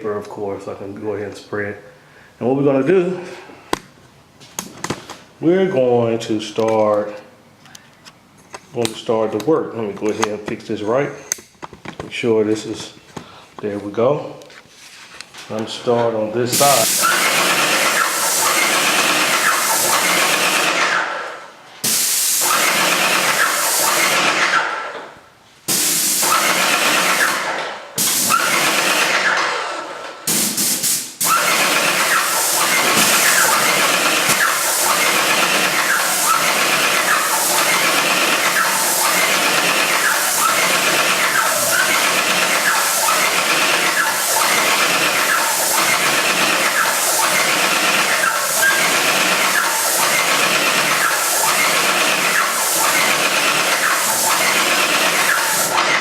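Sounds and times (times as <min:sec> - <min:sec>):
paint sprayer hissing: 0:16.5 - 0:20.9, 0:21.8 - 0:24.4, 0:25.7 - 0:29.2, 0:30.3 - 0:56.0.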